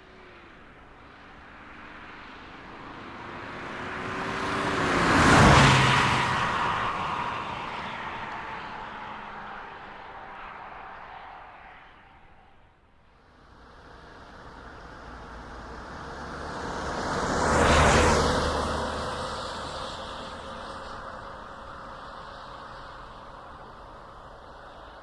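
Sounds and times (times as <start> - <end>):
car driving past: 2.2 - 12.6, 13.4 - 25.0.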